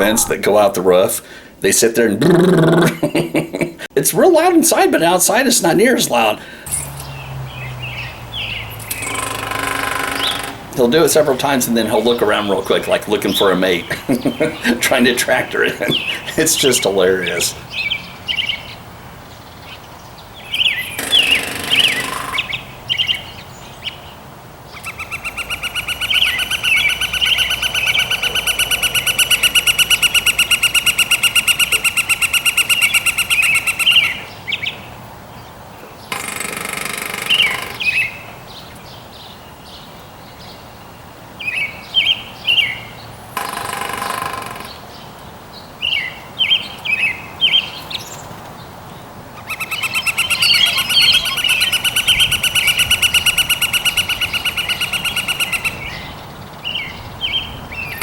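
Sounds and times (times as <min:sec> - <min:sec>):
small birds chirping: 0:00.0 - 0:04.2, 0:04.8 - 0:58.0
woodpecker drumming on metal: 0:08.4 - 0:17.6, 0:20.9 - 0:23.1, 0:24.8 - 0:34.3, 0:36.1 - 0:38.2, 0:43.2 - 0:45.0, 0:49.5 - 0:55.9
bird fast even calls: 0:24.8 - 0:34.3, 0:49.4 - 0:56.1.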